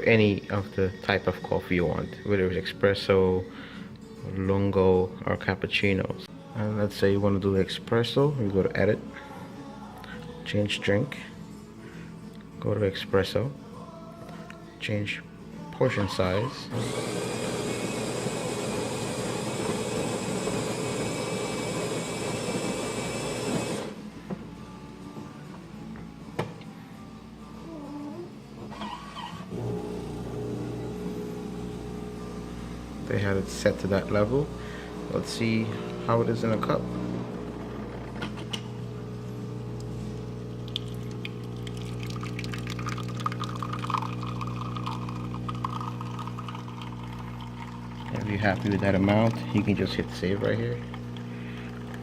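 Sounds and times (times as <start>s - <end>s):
coffee machine whirring: 16.2s - 24.0s, 28.6s - 52.0s
coffee trickling into cup: 39.8s - 52.0s.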